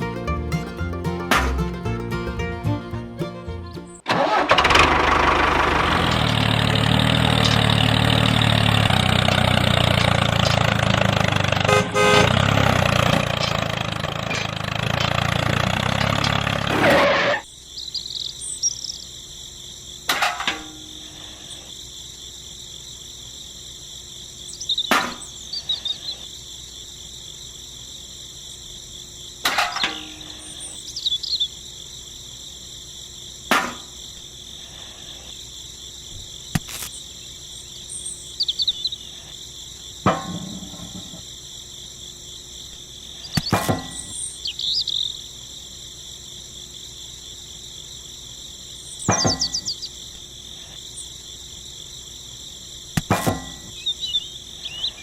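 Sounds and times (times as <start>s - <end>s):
crickets chirring: 3.7s - 55.0s.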